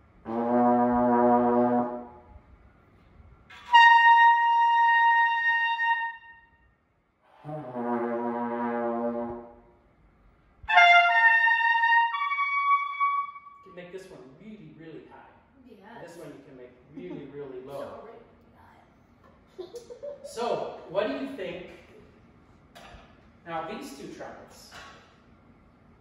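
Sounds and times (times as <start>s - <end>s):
trombone low note: 0.2s - 2.4s, 7.3s - 9.7s
piccolo trumpet high notes: 3.5s - 6.6s, 10.7s - 13.7s.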